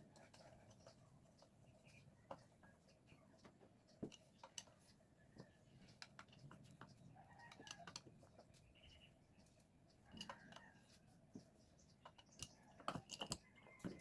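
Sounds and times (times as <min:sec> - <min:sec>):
faint clicks and taps: 0:00.0 - 0:14.0.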